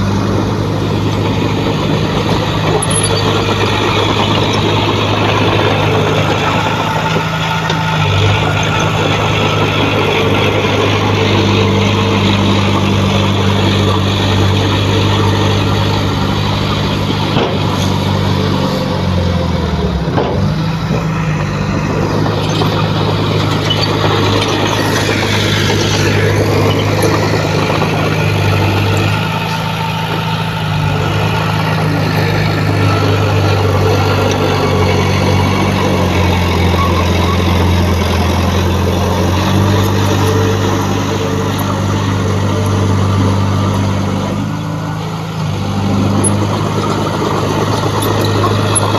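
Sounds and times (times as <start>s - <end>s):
heavy diesel engine running: 0.0s - 48.9s.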